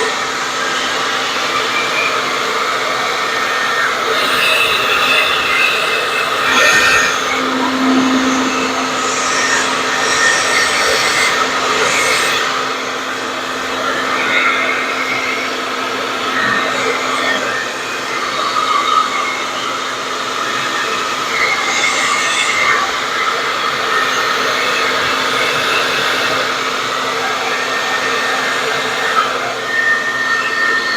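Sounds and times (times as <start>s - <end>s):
blow dryer running: 0.0s - 18.4s, 23.0s - 29.7s.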